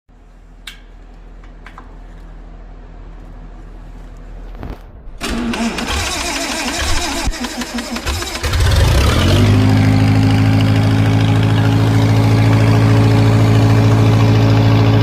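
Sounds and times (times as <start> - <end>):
car engine running roughly: 5.8 - 15.0
low hum: 8.6 - 15.0.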